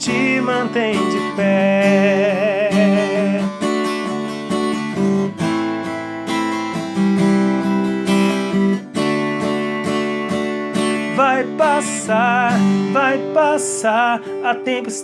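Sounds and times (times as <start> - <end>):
person singing: 0.0 - 3.8, 9.9 - 15.0
acoustic guitar strumming chords: 0.0 - 15.0.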